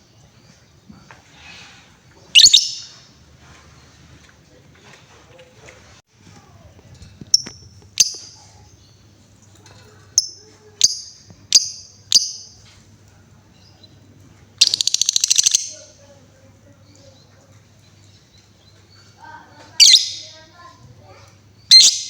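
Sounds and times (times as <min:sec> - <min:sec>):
lovebird rattling trill: 0:02.4 - 0:02.9, 0:14.6 - 0:16.0
lovebird sharp high chirps: 0:02.4 - 0:03.0, 0:10.2 - 0:12.6, 0:14.6 - 0:15.9, 0:19.8 - 0:20.4, 0:21.7 - 0:22.0.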